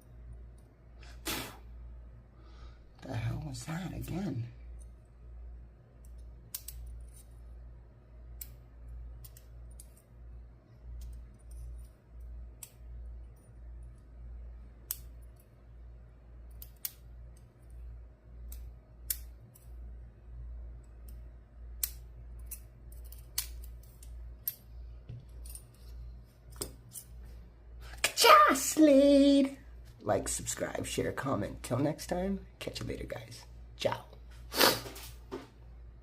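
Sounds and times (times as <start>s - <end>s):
low steady hum: 0.0s - 36.0s
lock pick metallic clicks: 6.0s - 7.4s, 8.3s - 10.1s, 14.8s - 15.4s, 16.4s - 17.5s, 18.4s - 19.8s, 20.8s - 24.7s.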